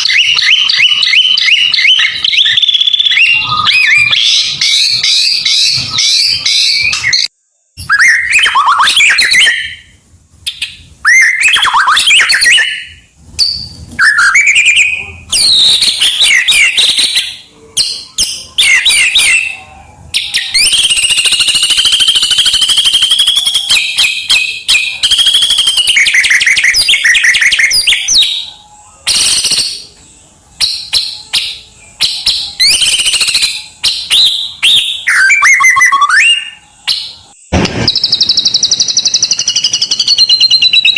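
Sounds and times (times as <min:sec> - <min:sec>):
bird singing varied phrases: 0:00.0 - 0:40.9.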